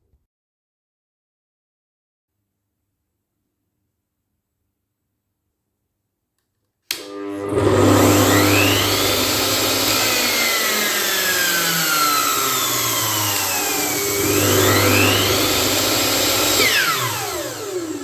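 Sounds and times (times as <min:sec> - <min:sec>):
power tool motor whining: 0:06.9 - 0:18.0.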